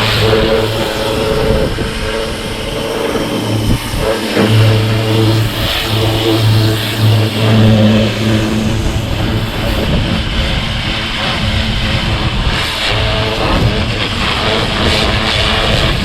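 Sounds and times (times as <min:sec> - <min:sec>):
water jet hissing: 0:00.0 - 0:10.0
pressure washer motor hum: 0:00.0 - 0:16.0.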